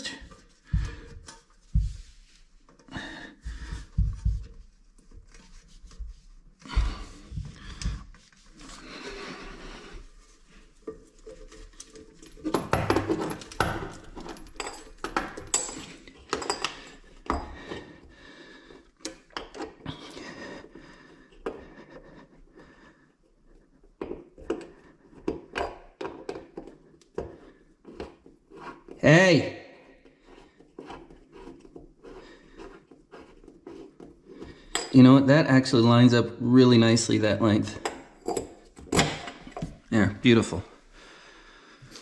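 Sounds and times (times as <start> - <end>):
rubbing and scraping: 0.0 - 22.4, 26.5 - 29.2, 29.9 - 35.1
hard parts clinking and knocking: 10.9 - 17.8, 37.7 - 39.9.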